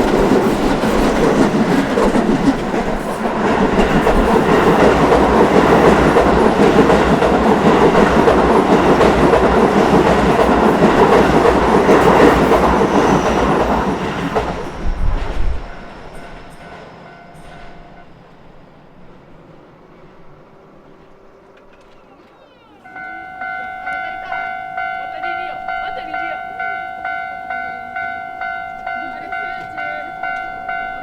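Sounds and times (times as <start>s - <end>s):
train wheels clattering over rail joints: 0.0s - 18.4s
electric train passing: 0.0s - 31.0s.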